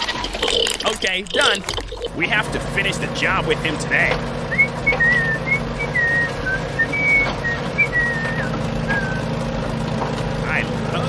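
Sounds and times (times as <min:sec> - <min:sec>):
steady low hum: 0:00.1 - 0:11.0
person whistling a tune: 0:04.5 - 0:09.3.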